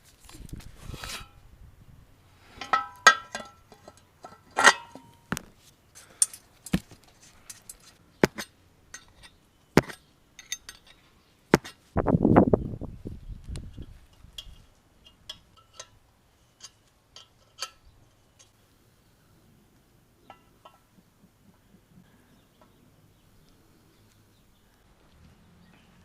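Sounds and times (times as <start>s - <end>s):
metal tools clinking: 2.6s - 5.3s, 6.0s - 9.4s, 10.4s - 11.1s.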